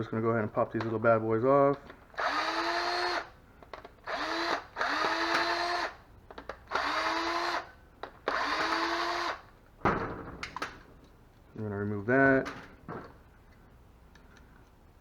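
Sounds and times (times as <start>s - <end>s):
cordless drill motor bursts: 2.2s - 3.3s, 4.0s - 6.0s, 6.7s - 9.5s.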